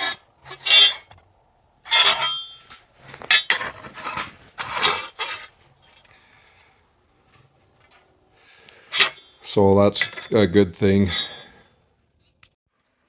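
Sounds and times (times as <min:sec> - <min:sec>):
metal tools scraping on metal: 0:00.0 - 0:01.2, 0:01.8 - 0:05.6, 0:08.8 - 0:10.5
faint handling noise: 0:02.4 - 0:09.1.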